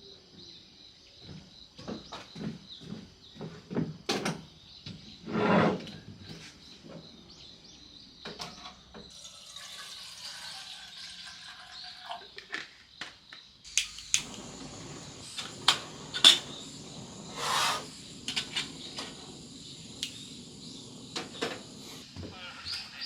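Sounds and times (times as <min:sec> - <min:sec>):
insects chirring: 0:13.7 - 0:23.0.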